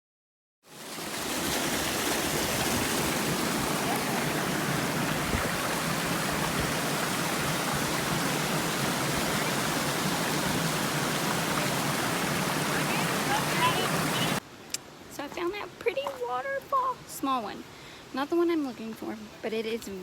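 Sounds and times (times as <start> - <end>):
small waterfall rushing: 0.7 - 15.1.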